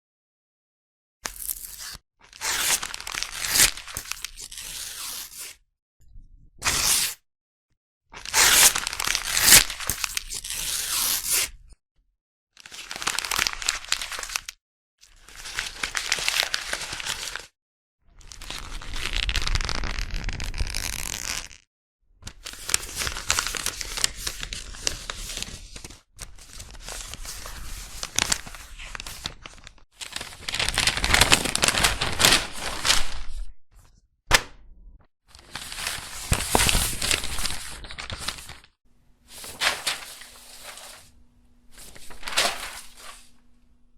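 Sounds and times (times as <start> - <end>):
paper crumpling: 1.3 - 4.8, 22.7 - 33.4, 35.4 - 43.5
paper tearing: 1.3 - 5.5, 6.6 - 7.2, 8.2 - 11.5, 19.1 - 21.6, 27.2 - 33.4, 39.3 - 41.1, 41.7 - 43.4.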